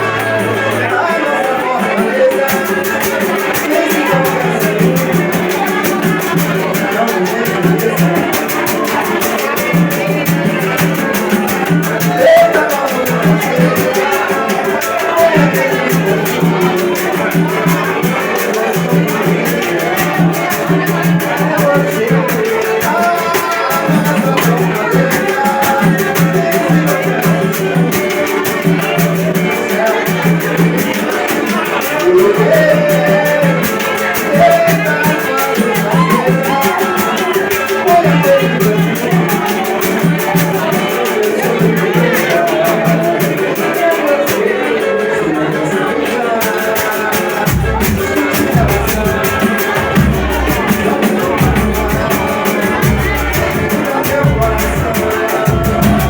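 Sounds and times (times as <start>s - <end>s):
fast percussion beat: 0.0s - 56.0s
latin band music: 0.0s - 56.0s
bass line: 47.5s - 56.0s.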